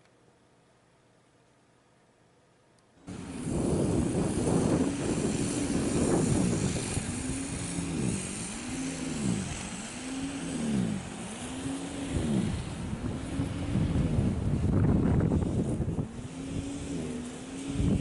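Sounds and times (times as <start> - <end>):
snow blower running: 3.1 - 18.0.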